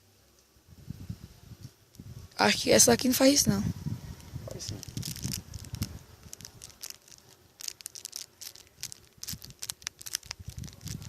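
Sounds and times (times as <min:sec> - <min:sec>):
light clicks and crackles: 0:04.1 - 0:11.0.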